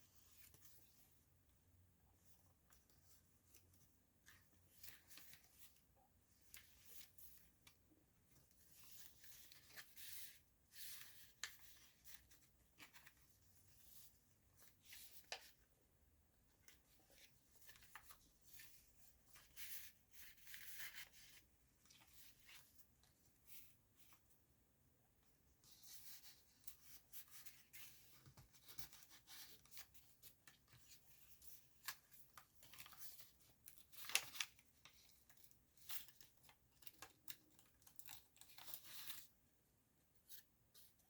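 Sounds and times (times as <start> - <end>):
paper pages rustling: 2.2 - 5.8, 8.4 - 15.8, 16.6 - 24.3, 25.6 - 39.3.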